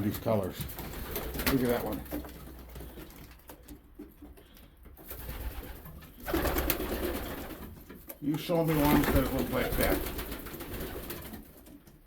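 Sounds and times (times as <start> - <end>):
pigeons cooing: 5.2 - 7.6.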